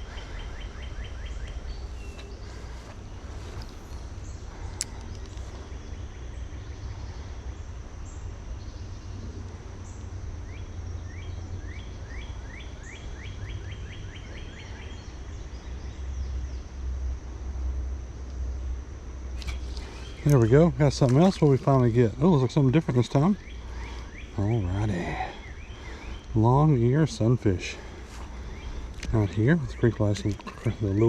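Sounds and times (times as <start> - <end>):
bird singing: 0.0 - 16.8, 19.4 - 31.0.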